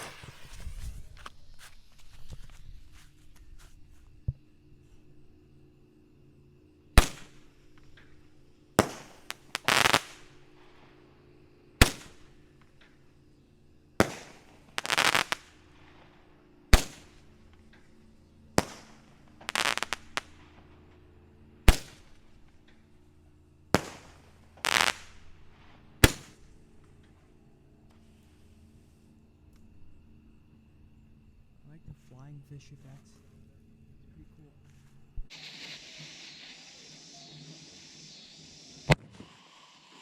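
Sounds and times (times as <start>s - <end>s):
firework sputtering crackle: 0.0s - 4.0s, 7.0s - 11.2s, 11.8s - 13.0s, 14.0s - 23.1s, 23.7s - 27.1s, 35.3s - 40.0s
roman candle shots popping: 0.0s - 4.1s, 7.0s - 11.1s, 11.8s - 13.1s, 14.0s - 23.0s, 23.7s - 28.1s, 35.3s - 40.0s.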